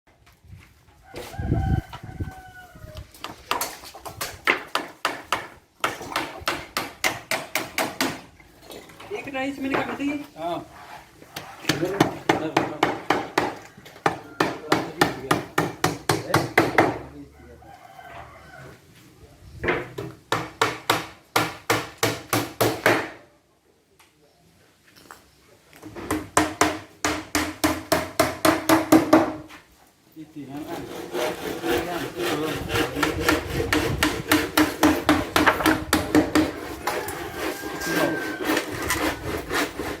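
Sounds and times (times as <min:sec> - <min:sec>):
rubbing: 0:10.1 - 0:11.9
sharp knocks on wood: 0:11.7 - 0:17.0, 0:19.6 - 0:23.2, 0:26.0 - 0:29.5, 0:33.0 - 0:36.6.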